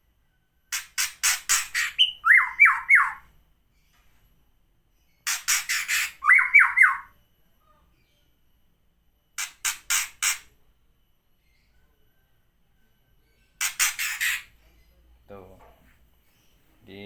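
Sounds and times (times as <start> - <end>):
bird harsh rasping calls: 0.7 - 3.3, 5.2 - 7.1, 9.4 - 10.5, 13.6 - 14.5.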